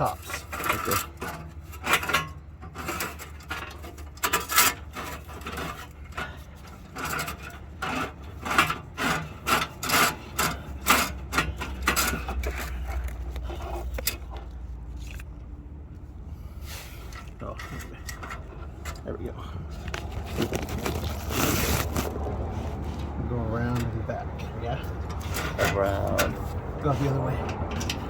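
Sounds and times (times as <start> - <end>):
steel cable scraping metal: 0.0 - 15.2, 16.4 - 28.0.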